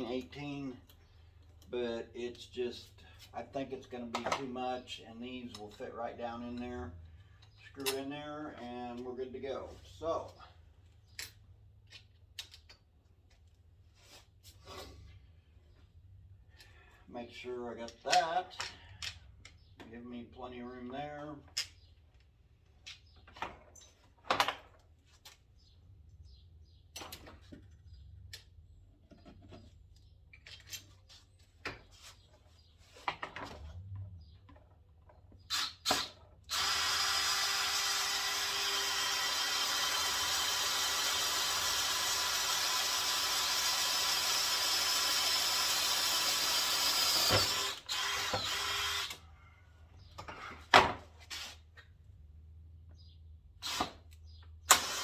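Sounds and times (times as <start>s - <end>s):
power drill running: 35.5s - 49.2s, 53.6s - 54.0s, 54.7s - 55.0s.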